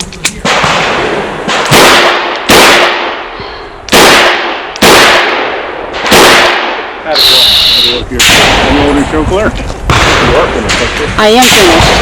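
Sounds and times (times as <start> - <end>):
revolver gunshots: 0.4 - 9.1, 9.8 - 12.0.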